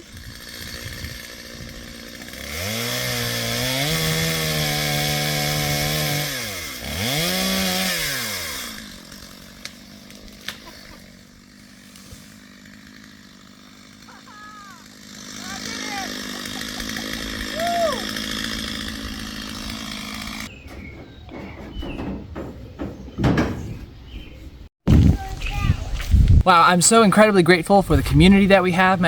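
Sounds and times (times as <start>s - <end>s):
chainsaw revving: 0.0s - 20.5s.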